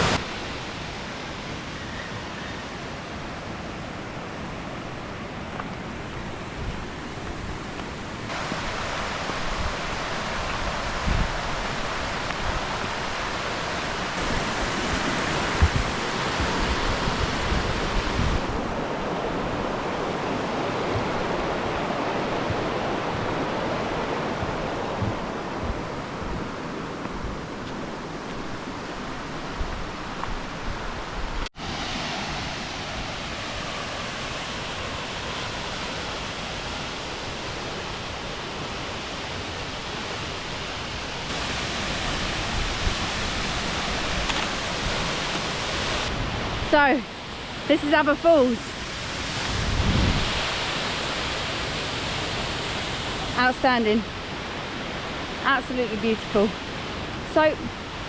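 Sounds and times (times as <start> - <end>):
waterfall rushing: 0.0 - 0.7, 8.2 - 27.0, 31.6 - 58.0
wind buffeting microphone: 14.2 - 27.5, 49.0 - 50.8.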